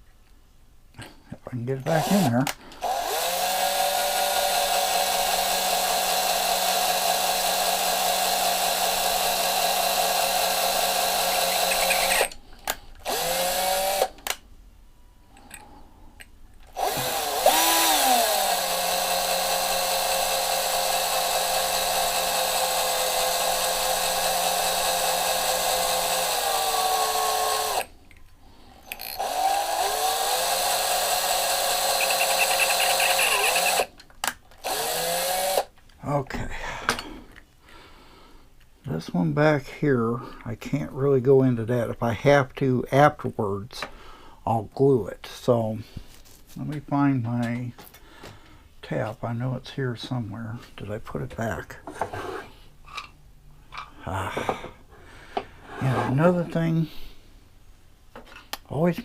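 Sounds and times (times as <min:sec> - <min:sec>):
electric drill whining: 0:01.8 - 0:12.4, 0:13.0 - 0:14.4, 0:16.7 - 0:27.9, 0:28.8 - 0:34.0, 0:34.6 - 0:35.7.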